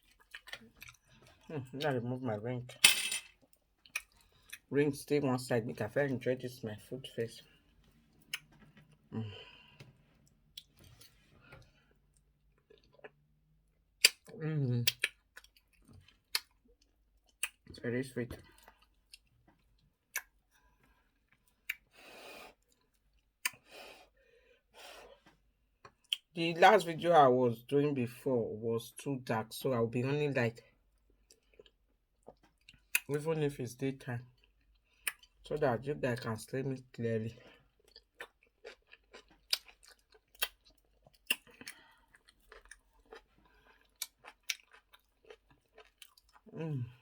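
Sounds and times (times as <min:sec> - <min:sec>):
chewing and wet mouth smacks: 0:00.0 - 0:01.5, 0:03.8 - 0:04.7, 0:07.8 - 0:09.1, 0:10.1 - 0:13.3, 0:13.9 - 0:17.7, 0:18.4 - 0:20.4, 0:21.2 - 0:23.7, 0:25.2 - 0:26.3, 0:31.0 - 0:33.1, 0:34.3 - 0:35.4, 0:37.4 - 0:46.6
wet mouth clicks chewing: 0:08.2 - 0:08.9, 0:14.0 - 0:16.6, 0:17.3 - 0:17.7, 0:34.4 - 0:35.4, 0:37.8 - 0:46.5.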